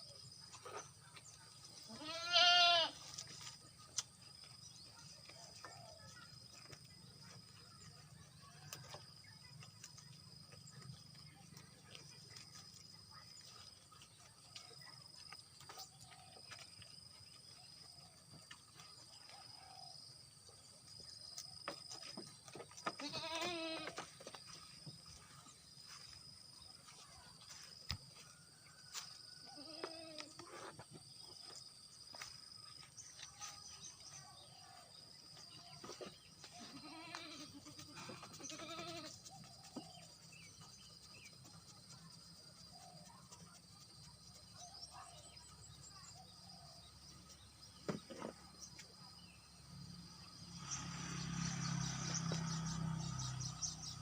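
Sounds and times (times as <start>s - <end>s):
goats bleating: 1.9s - 3.0s, 23.0s - 24.0s, 36.6s - 39.1s.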